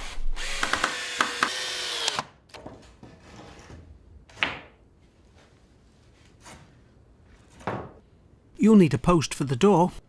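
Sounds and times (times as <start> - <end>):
cordless drill driving screw: 0.0 - 2.3.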